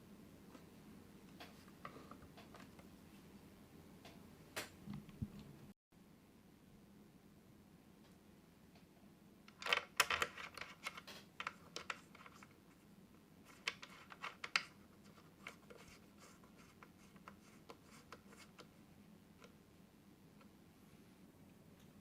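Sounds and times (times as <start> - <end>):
scratching and clicking handling: 9.5 - 12.8, 13.4 - 19.6.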